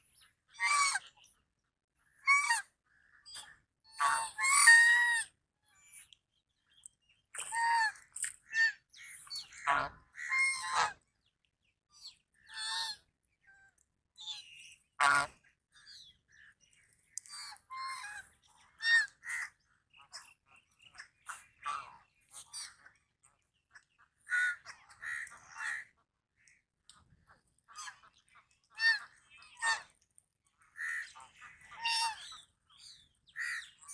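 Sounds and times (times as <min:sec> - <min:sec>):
goose honking: 0:09.4 - 0:11.0, 0:15.0 - 0:15.3.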